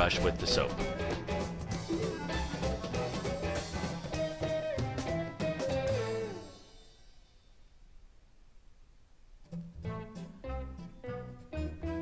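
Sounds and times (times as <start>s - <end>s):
background music with drum beat: 0.0s - 7.2s.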